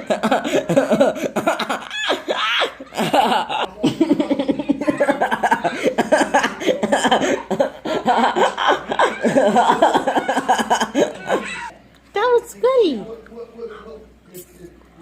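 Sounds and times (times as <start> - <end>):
high-pitched voices laughing: 0.0 - 11.8
chatter: 0.0 - 15.0.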